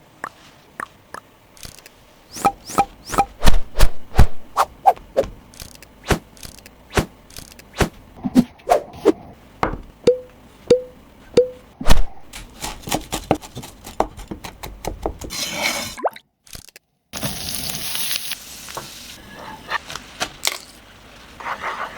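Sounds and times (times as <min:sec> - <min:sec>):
sharp taps and knocks: 0:09.6 - 0:11.6
short ringing taps: 0:09.7 - 0:11.7.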